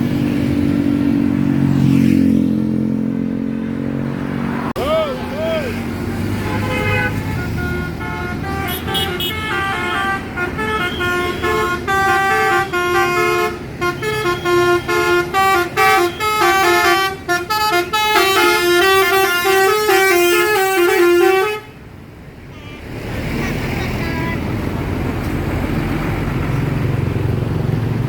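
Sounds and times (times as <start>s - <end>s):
musical bus horn melody: 6.1s - 21.8s, 22.4s - 23.0s.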